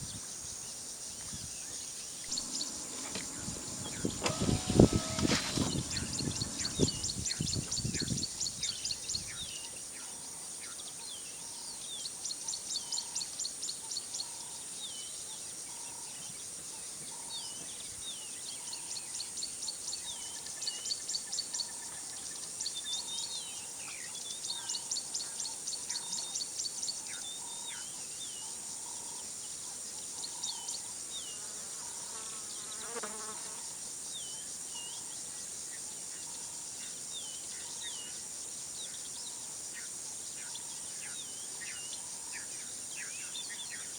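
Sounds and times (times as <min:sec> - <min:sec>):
high insect drone: 0:00.0 - 0:09.4
rapid high trilling: 0:02.4 - 0:07.2.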